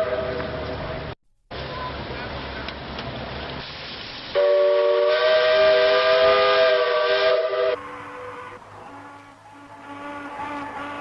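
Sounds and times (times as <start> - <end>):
ship's whistle chord: 4.4 - 11.0.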